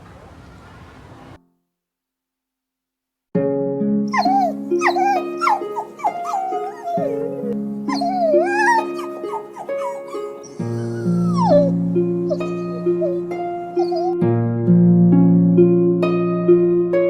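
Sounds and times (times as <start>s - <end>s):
soft background music: 3.4s - 17.0s
puppy whimpering and yipping: 4.1s - 14.2s.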